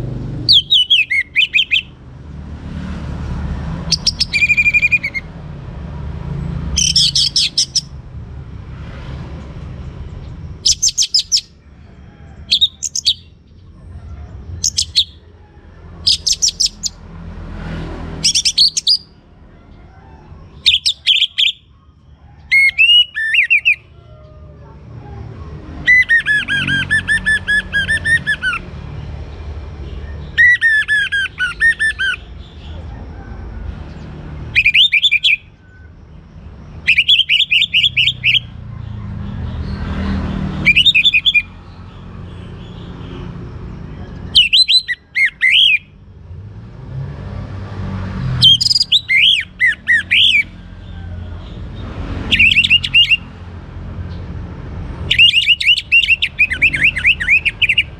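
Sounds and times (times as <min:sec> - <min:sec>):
thrush singing whistled notes: 0:00.4 - 0:02.0, 0:03.8 - 0:05.3, 0:06.7 - 0:08.0, 0:10.6 - 0:11.6, 0:12.4 - 0:13.4, 0:14.6 - 0:15.2, 0:16.0 - 0:17.0, 0:18.2 - 0:19.2, 0:20.6 - 0:21.8, 0:22.4 - 0:23.9, 0:25.8 - 0:28.7, 0:30.2 - 0:32.4, 0:33.9 - 0:35.6, 0:36.7 - 0:38.6, 0:39.6 - 0:41.8, 0:44.3 - 0:46.0, 0:48.4 - 0:50.5, 0:52.2 - 0:53.3, 0:55.1 - 0:57.9.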